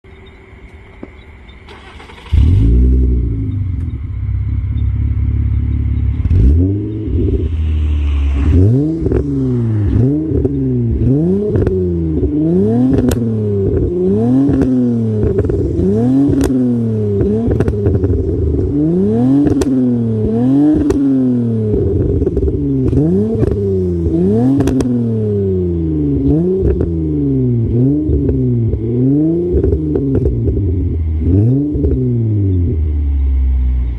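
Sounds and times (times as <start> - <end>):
car engine revving: 1.6 - 33.9
exhaust pops and crackles: 9.9 - 25.0, 26.2 - 27.0, 27.6 - 31.0.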